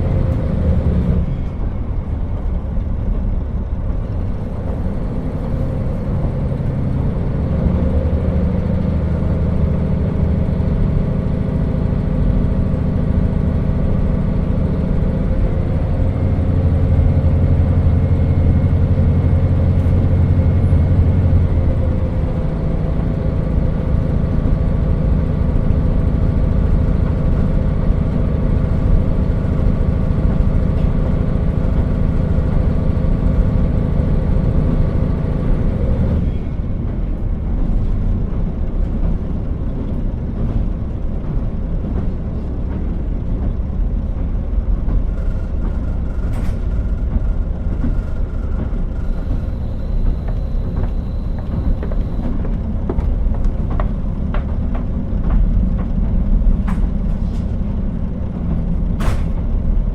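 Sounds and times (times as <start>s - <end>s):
diesel railcar engine droning: 0.0s - 59.9s
railcar running noise: 0.0s - 59.9s.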